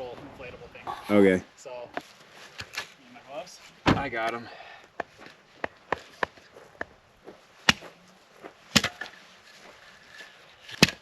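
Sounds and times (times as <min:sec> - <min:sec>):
axe chopping firewood: 0:07.6 - 0:07.9, 0:08.7 - 0:09.2, 0:10.7 - 0:11.0.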